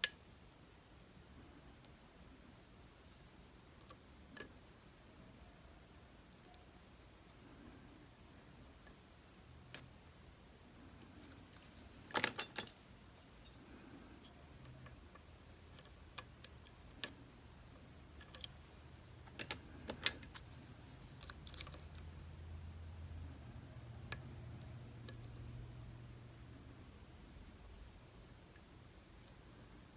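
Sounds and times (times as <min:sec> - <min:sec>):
lock-picking tools clicking: 0:12.0 - 0:12.8, 0:15.7 - 0:17.2, 0:18.1 - 0:22.2.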